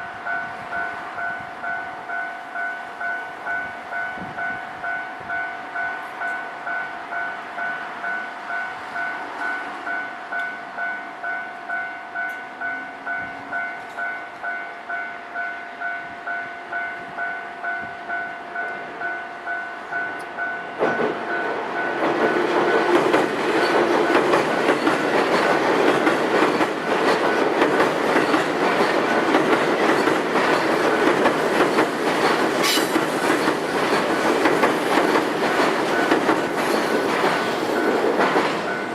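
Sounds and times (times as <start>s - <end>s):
level-crossing warning bell: 0.0s - 38.9s
train passing: 0.0s - 38.9s
train wheels clattering: 20.2s - 38.9s.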